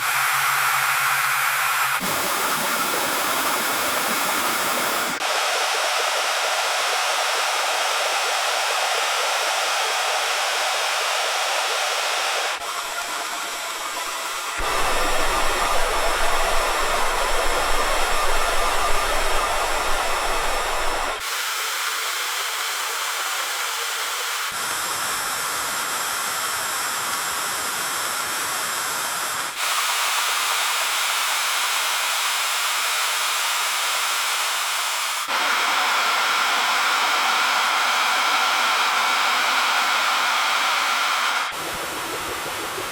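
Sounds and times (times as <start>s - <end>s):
water pump rushing and hissing: 0.0s - 33.4s
low rumble: 14.6s - 21.2s.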